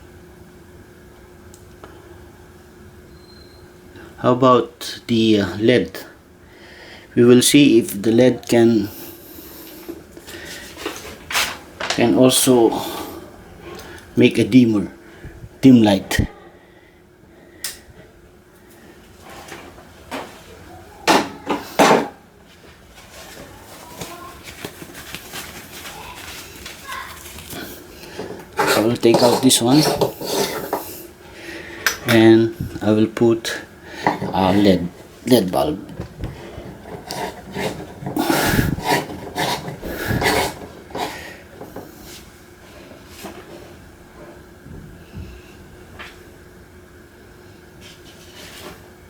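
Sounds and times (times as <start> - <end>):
hard objects knocking and clattering: 34.0 - 34.5, 35.9 - 41.9.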